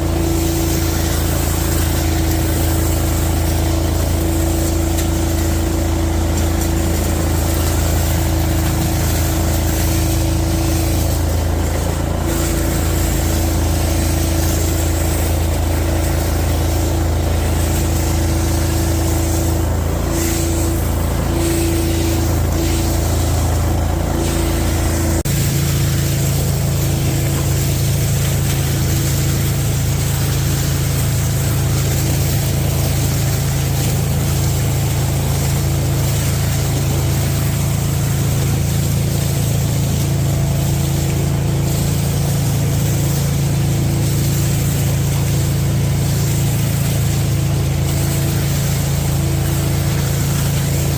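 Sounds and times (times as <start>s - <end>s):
industrial vacuum running: 0.0s - 50.9s.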